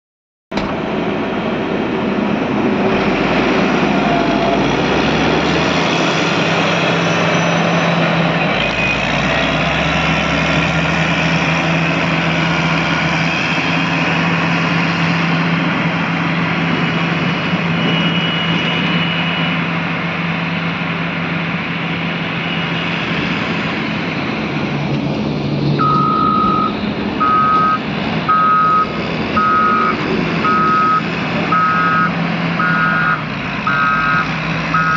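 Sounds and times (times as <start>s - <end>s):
diesel engine running: 0.5s - 34.9s
reversing alarm beeping: 25.8s - 34.9s.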